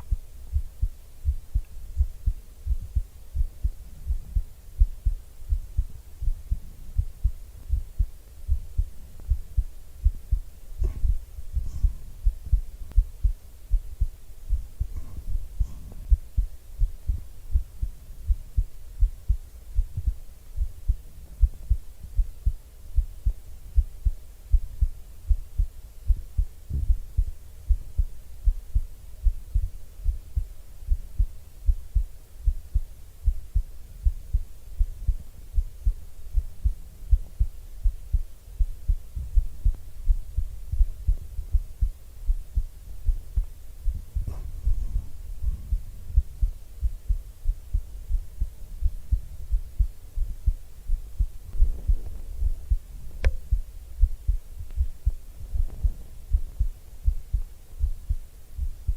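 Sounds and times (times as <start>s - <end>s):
heartbeat thumps: 0.0s - 58.9s
microphone rustles: 14.5s - 17.3s, 42.3s - 46.5s, 50.9s - 57.2s.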